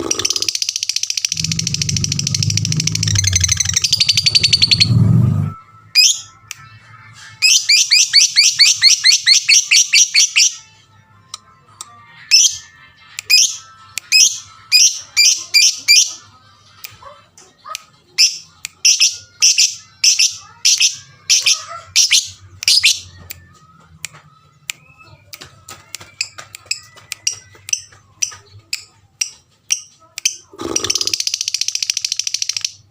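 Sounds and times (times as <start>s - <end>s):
lovebird chirping: 0.0s - 5.0s, 7.4s - 10.6s, 29.2s - 32.8s.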